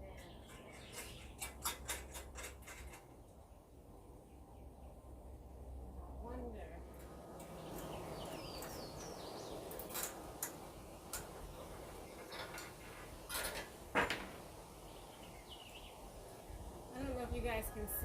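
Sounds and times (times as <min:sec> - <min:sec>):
birds chirping: 0:00.0 - 0:02.4, 0:06.3 - 0:18.0
parts clicking and knocking: 0:00.2 - 0:03.2, 0:12.1 - 0:14.5.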